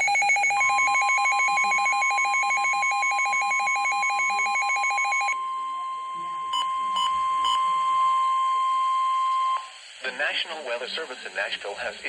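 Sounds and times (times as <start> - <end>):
rapid pulsing electronic alarm: 0.0 - 8.0
steady warning tone: 0.0 - 9.7.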